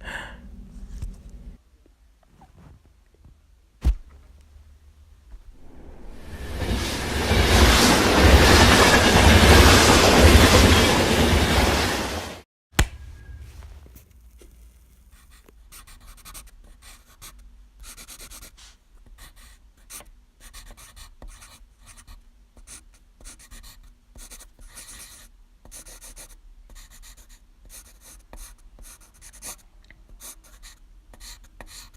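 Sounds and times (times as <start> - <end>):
steady low hum: 4.4 - 7.5.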